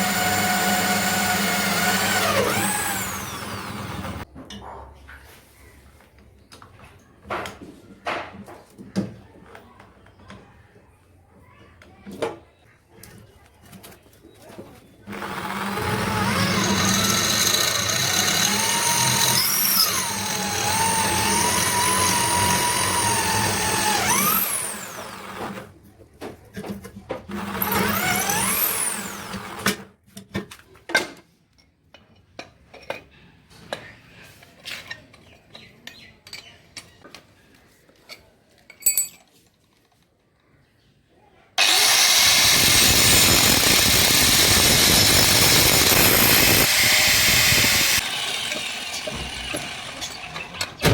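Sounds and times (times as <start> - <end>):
power tool whining: 0.0 - 4.2, 15.1 - 25.7, 27.3 - 29.8, 41.6 - 50.9.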